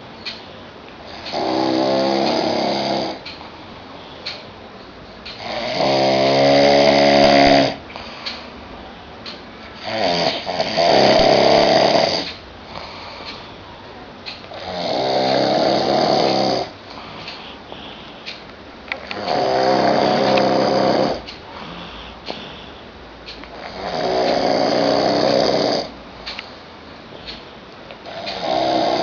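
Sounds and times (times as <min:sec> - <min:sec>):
person snoring loudly: 0:01.1 - 0:03.2, 0:05.4 - 0:07.8, 0:09.8 - 0:13.2, 0:14.5 - 0:17.9, 0:19.0 - 0:22.7, 0:23.5 - 0:26.0, 0:28.0 - 0:29.0
quiet breathing: 0:01.8 - 0:04.6, 0:05.5 - 0:09.0, 0:09.8 - 0:14.0, 0:14.6 - 0:29.0.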